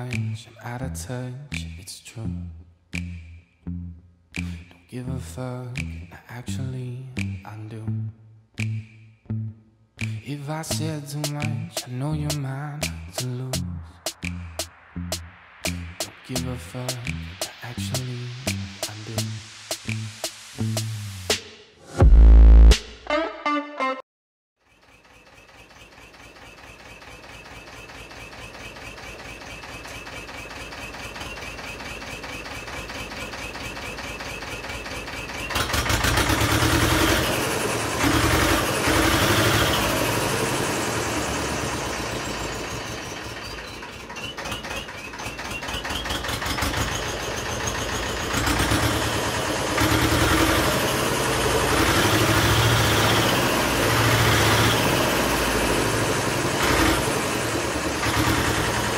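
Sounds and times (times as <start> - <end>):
vehicle engine revving: 31.2 - 43.4, 44.5 - 58.9.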